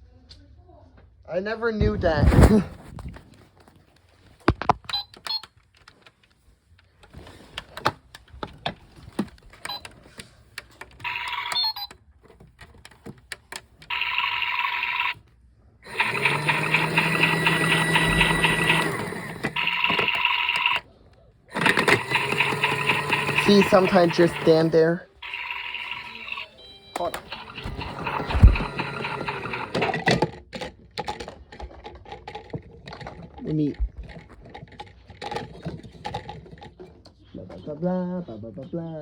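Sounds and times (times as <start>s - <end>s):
toy motor rattling buzz: 11.0s - 11.6s, 13.9s - 15.2s, 15.9s - 20.8s, 21.5s - 30.2s.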